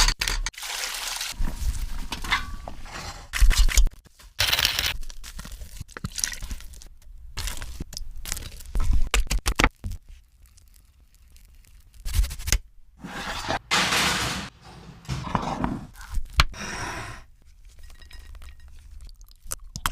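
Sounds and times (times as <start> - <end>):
rustling and scraping: 13.0 - 16.2.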